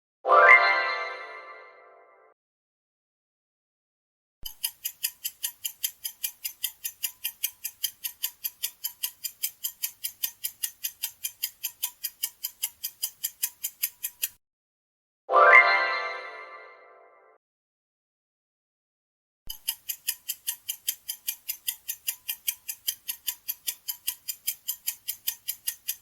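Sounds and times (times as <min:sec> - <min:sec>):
clock ticking: 0:04.4 - 0:14.4, 0:19.5 - 0:26.0.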